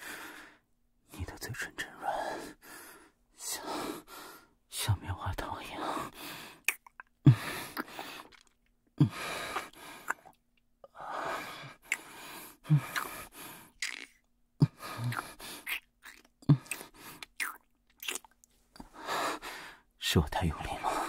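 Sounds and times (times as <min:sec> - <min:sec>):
man breathing heavily: 0:00.0 - 0:00.6, 0:02.0 - 0:04.6, 0:05.7 - 0:06.6, 0:07.2 - 0:08.4, 0:09.0 - 0:10.2, 0:10.9 - 0:13.8, 0:14.6 - 0:15.7, 0:16.5 - 0:17.3, 0:18.8 - 0:19.9, 0:20.8 - 0:21.0
kissing smacks: 0:06.6 - 0:07.1, 0:13.8 - 0:14.2, 0:15.0 - 0:18.3.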